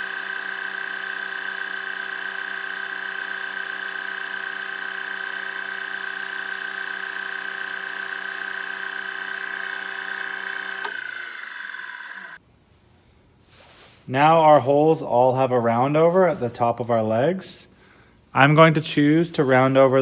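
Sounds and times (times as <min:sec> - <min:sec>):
motor winding down: 0:00.0 - 0:12.4
sander motor humming: 0:00.0 - 0:12.4.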